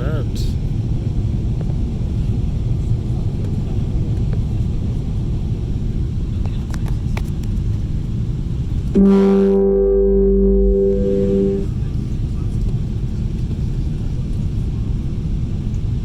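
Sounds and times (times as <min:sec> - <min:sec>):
airliner cabin rumble: 0:00.0 - 0:16.0
loud multi-pitch tone: 0:09.0 - 0:11.7.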